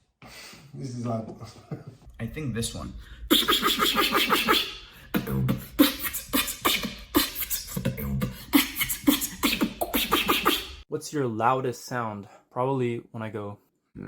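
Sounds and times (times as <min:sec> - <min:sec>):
beatboxing clicks and bursts: 0:03.3 - 0:10.8.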